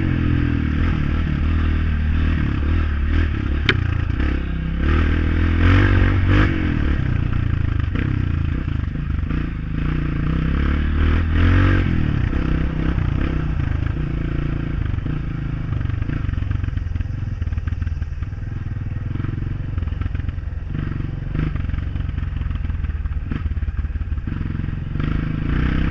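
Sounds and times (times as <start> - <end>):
dirt bike engine revving: 0.0 - 25.9.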